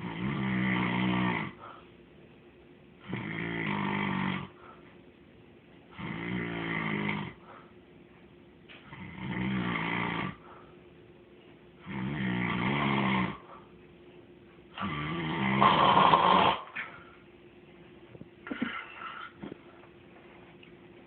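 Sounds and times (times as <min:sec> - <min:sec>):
buzzy snoring: 0:00.0 - 0:01.7, 0:03.0 - 0:04.7, 0:05.9 - 0:07.6, 0:08.9 - 0:10.7, 0:11.8 - 0:13.7, 0:14.8 - 0:16.7
quiet breathing: 0:01.5 - 0:02.0, 0:04.4 - 0:05.1, 0:07.3 - 0:07.9, 0:10.3 - 0:11.0.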